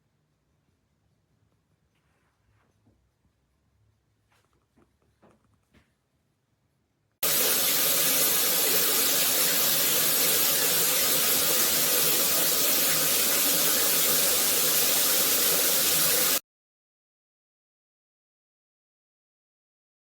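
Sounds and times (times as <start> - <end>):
shower water spraying: 7.2 - 16.4.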